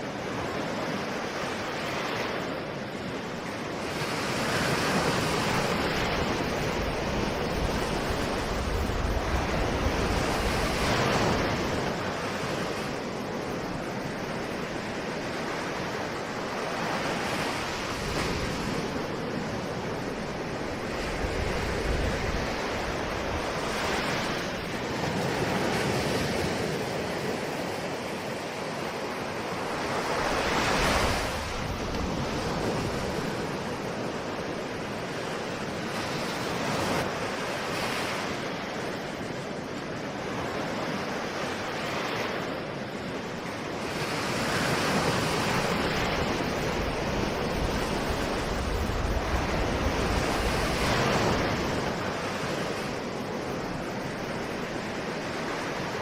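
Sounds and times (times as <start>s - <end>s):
ocean waves breaking on shore: 0.0s - 56.0s
wind noise: 0.0s - 56.0s.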